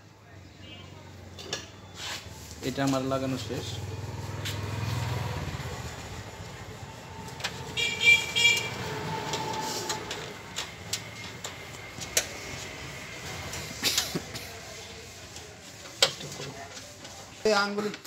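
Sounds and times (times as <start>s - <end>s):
vehicle horn toots: 7.7s - 9.6s.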